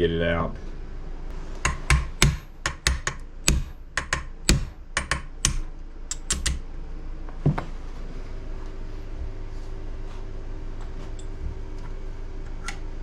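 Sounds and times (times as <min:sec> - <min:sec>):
hammer tapping metal punch: 0:01.6 - 0:06.6.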